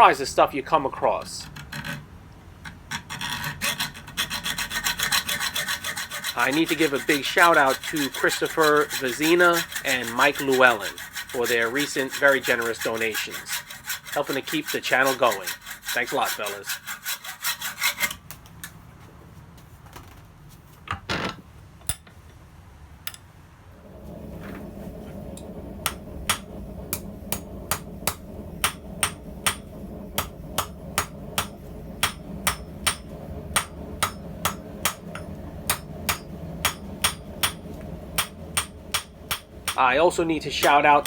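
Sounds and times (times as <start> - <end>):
steady low hum: 23.1 - 41.0
hammer striking steel on an anvil: 25.8 - 41.0.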